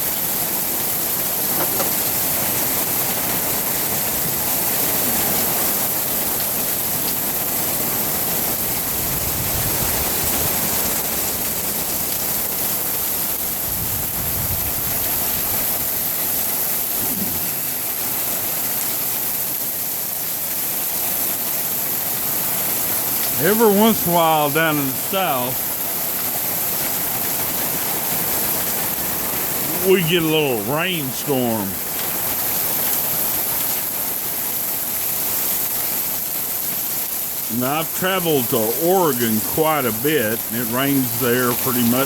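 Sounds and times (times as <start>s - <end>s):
heavy rain pouring: 0.0s - 42.0s.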